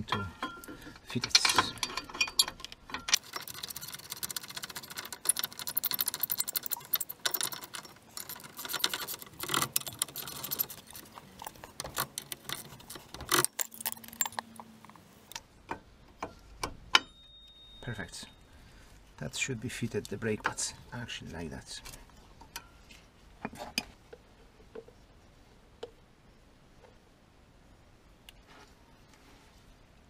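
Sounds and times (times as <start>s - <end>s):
metal brake pads clinking: 0.0s - 3.7s, 5.8s - 14.7s, 16.6s - 18.2s.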